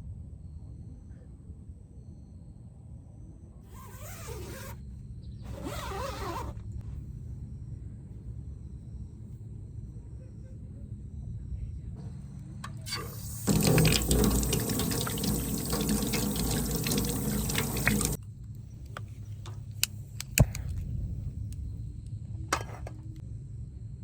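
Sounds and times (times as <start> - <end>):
water running and splashing: 12.9 - 18.2.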